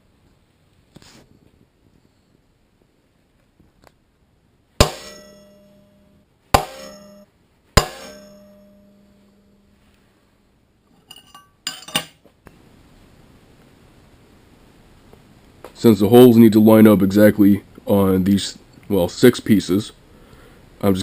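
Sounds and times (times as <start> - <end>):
steel plate clanging on metal: 4.8 - 5.9, 6.6 - 9.1, 11.0 - 12.2
light metal clinks: 11.0 - 12.2.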